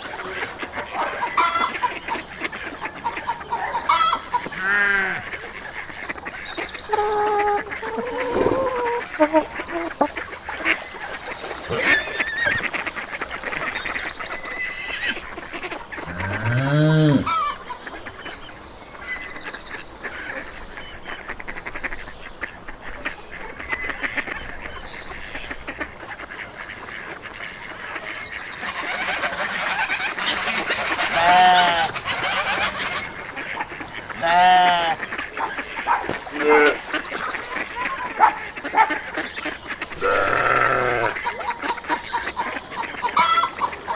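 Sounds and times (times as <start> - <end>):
geese honking: 0.0 - 18.2, 25.4 - 43.9
arching animal call: 6.8 - 17.6, 28.6 - 39.1, 39.7 - 42.0.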